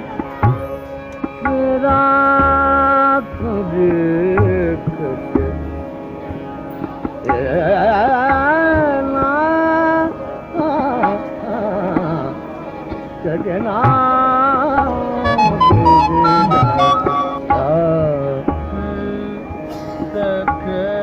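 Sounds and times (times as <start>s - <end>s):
harmonium chords: 0.0s - 21.0s
tabla strokes: 14.8s - 18.7s
person singing ornamented vowels: 15.2s - 18.2s.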